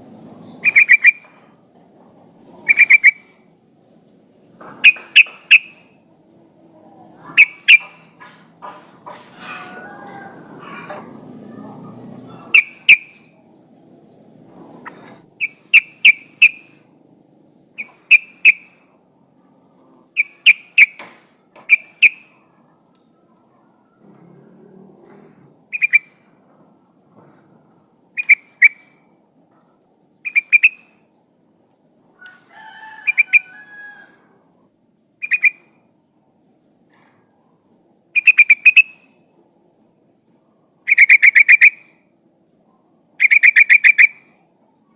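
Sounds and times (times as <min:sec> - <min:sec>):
bird calling sharp notes: 0:00.1 - 0:01.4, 0:02.4 - 0:03.4, 0:04.8 - 0:06.0, 0:07.3 - 0:08.2, 0:12.3 - 0:13.4, 0:14.8 - 0:16.8, 0:17.8 - 0:18.9, 0:20.1 - 0:22.4, 0:25.6 - 0:26.4, 0:28.1 - 0:29.0, 0:30.2 - 0:31.0, 0:35.2 - 0:35.8, 0:38.2 - 0:39.4, 0:40.8 - 0:42.0, 0:43.2 - 0:44.4.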